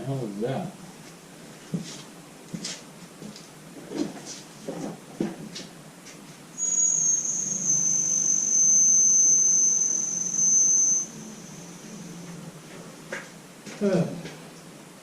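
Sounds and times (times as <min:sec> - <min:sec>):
high-pitched steady tone: 0:06.6 - 0:13.2.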